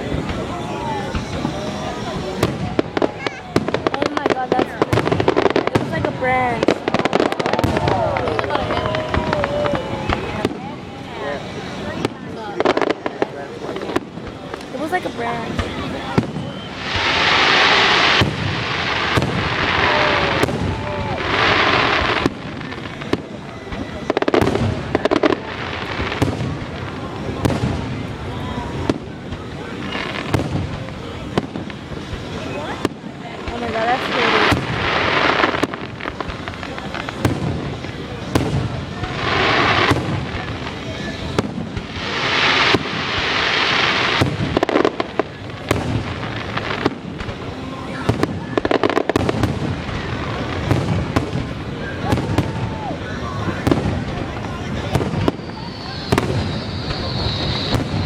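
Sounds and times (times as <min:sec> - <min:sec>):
fireworks bangs: 0:00.0 - 0:58.0
fireworks rushing crackle: 0:00.0 - 0:58.0.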